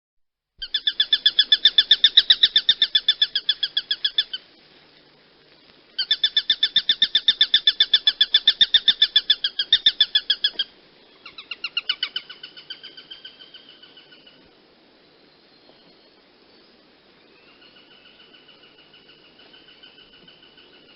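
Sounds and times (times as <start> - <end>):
hawk calling: 0.6 - 4.5, 6.0 - 14.4.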